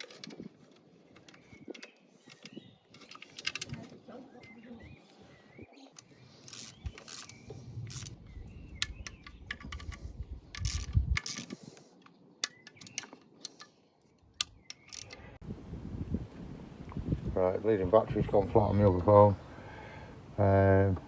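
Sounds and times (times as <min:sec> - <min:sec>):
hand tools clicking and clinking: 0:00.0 - 0:04.7, 0:05.9 - 0:08.2, 0:08.8 - 0:15.2
faint birds chirping: 0:00.0 - 0:15.4, 0:17.6 - 0:21.0.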